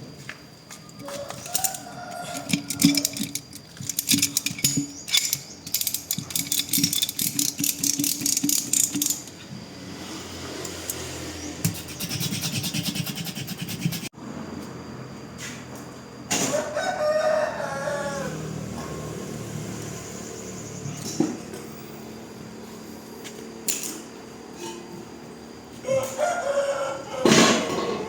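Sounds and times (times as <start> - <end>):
mechanical clattering clicks: 1.4 - 9.4.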